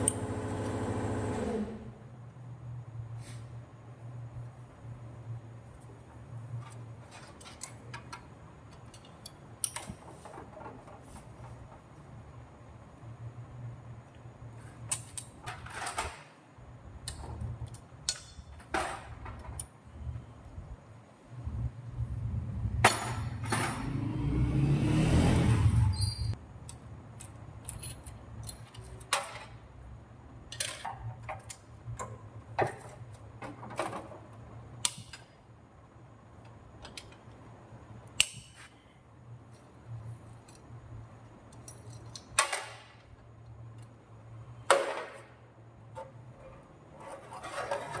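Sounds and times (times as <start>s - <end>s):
steady low hum: 19.8s - 24.7s.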